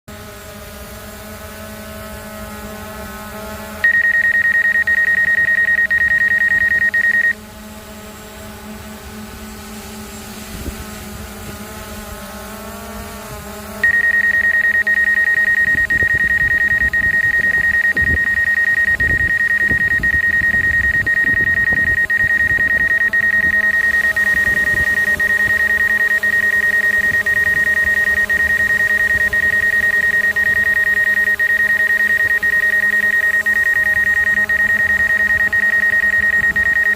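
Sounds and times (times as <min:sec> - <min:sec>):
drone motors humming: 0:00.1 - 0:36.9
loud high-pitched tone: 0:03.8 - 0:07.4, 0:13.8 - 0:36.9.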